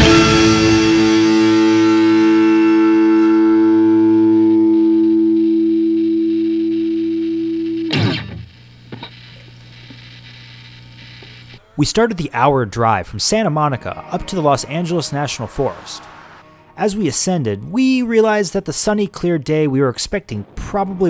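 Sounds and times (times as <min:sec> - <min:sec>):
electric guitar chord with effects: 0:00.0 - 0:08.5.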